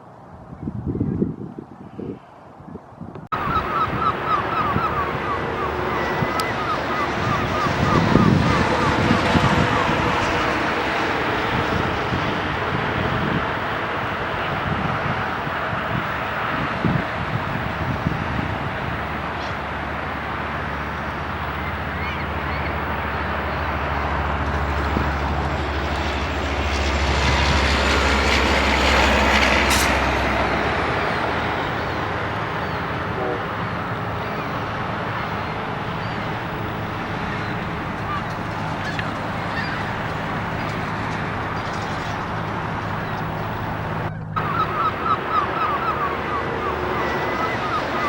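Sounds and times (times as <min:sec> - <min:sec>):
steady rushing noise: 0:03.3 - 0:48.0
vehicle engine hum: 0:03.3 - 0:48.0
waterfowl honking: 0:03.3 - 0:48.0.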